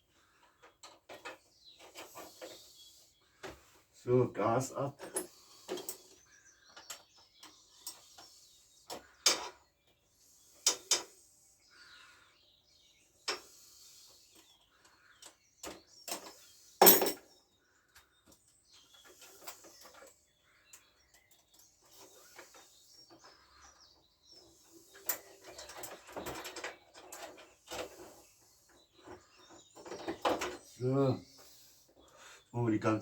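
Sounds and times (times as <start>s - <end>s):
rattling and rustling: 24.5s - 30.8s.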